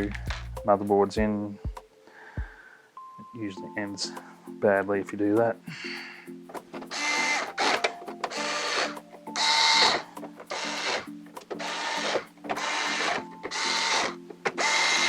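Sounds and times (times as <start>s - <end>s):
background music: 0.0s - 15.0s
electric screwdriver motor whine: 6.9s - 15.0s.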